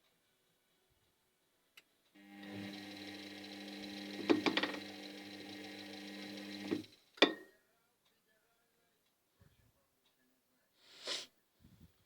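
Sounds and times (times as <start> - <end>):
washing machine motor humming: 2.2 - 7.0.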